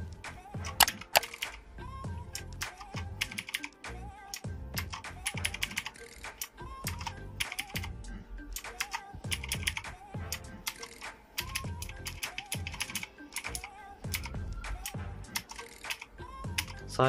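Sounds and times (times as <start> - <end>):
background music: 0.0 - 17.0
mechanical keyboard clicking: 0.6 - 1.6, 2.4 - 3.7, 4.3 - 7.9, 8.6 - 9.9, 10.6 - 16.8.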